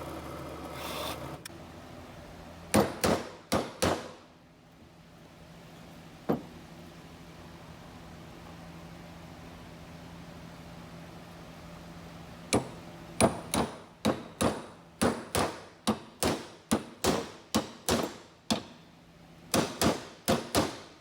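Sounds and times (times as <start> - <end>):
sharp hammer strikes: 2.7 - 4.2, 12.6 - 18.7, 19.5 - 20.9.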